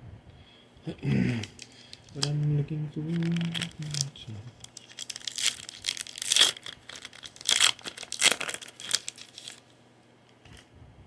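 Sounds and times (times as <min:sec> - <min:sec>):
foil wrapper crinkling and tearing: 0:01.5 - 0:09.7.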